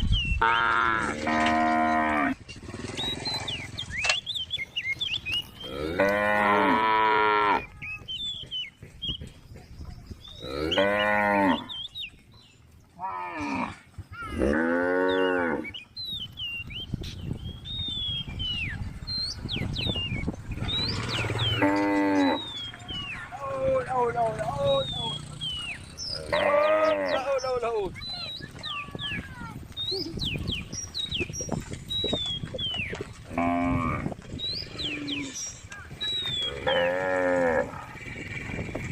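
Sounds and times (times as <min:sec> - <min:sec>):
cows mooing: 0:00.4 - 0:03.7, 0:05.6 - 0:07.7, 0:10.4 - 0:11.8, 0:13.0 - 0:15.8, 0:20.7 - 0:27.6, 0:33.2 - 0:35.6, 0:36.2 - 0:38.0.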